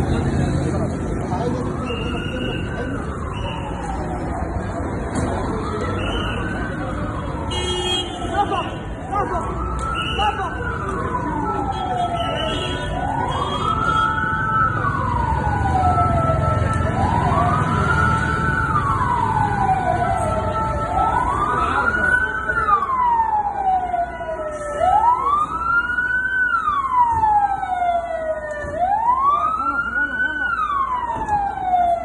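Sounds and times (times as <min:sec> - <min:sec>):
emergency vehicle siren wailing: 0:00.0 - 0:32.0.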